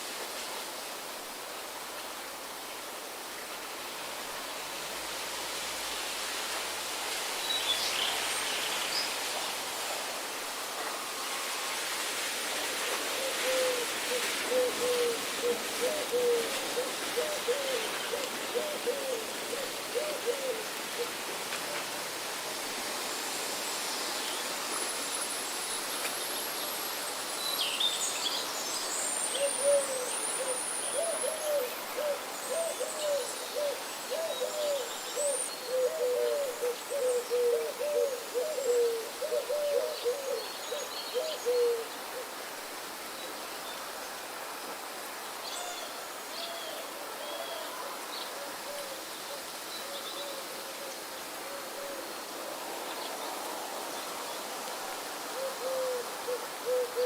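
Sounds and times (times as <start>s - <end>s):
background hiss: 0.0s - 57.0s
bird hooting: 55.4s - 57.0s.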